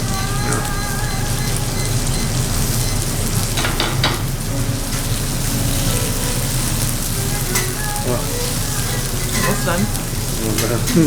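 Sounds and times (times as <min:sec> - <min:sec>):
beef sizzling: 0:00.0 - 0:11.0.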